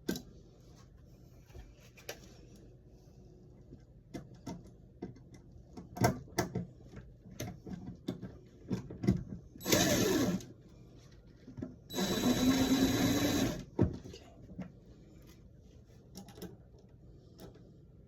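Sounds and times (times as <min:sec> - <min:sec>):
small electric motor whining: 0:09.6 - 0:10.4, 0:11.9 - 0:13.6.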